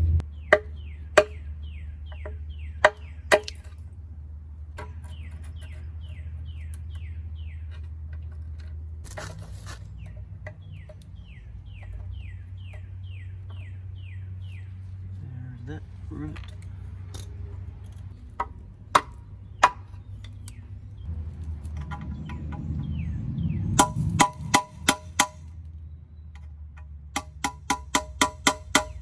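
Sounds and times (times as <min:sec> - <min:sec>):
bird chirping: 0:00.2 - 0:29.0
sharp knocks: 0:00.5 - 0:01.4, 0:23.7 - 0:25.5, 0:26.7 - 0:29.0.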